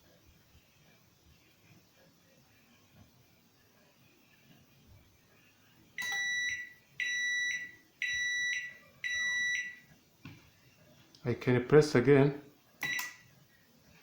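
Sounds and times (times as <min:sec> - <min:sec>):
microwave oven beeps: 0:06.0 - 0:09.9, 0:12.8 - 0:13.3.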